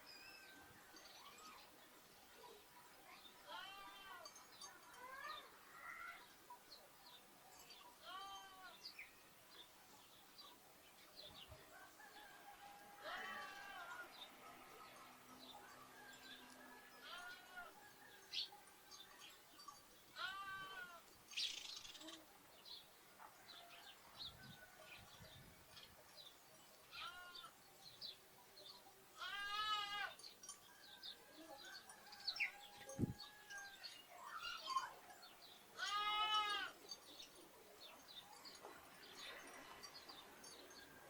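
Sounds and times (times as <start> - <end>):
small birds chirping: 18.3 - 23.0
lambs bleating: 20.2 - 21.0, 29.2 - 30.1, 35.8 - 36.8.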